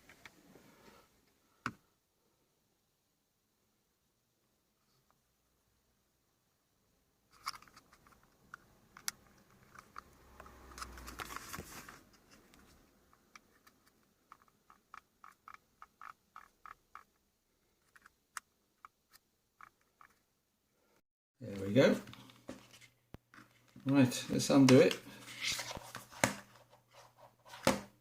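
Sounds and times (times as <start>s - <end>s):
evenly spaced small clicks: 13.1s - 17.2s.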